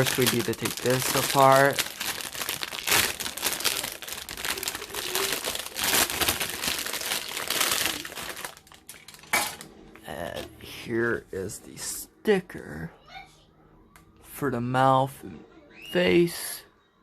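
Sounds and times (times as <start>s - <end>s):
plastic packaging crinkling: 0.0s - 9.7s.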